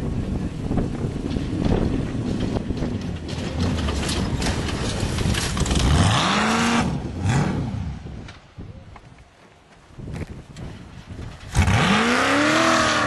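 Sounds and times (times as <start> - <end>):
race vehicle engine revving: 5.7 - 8.0, 11.5 - 13.0.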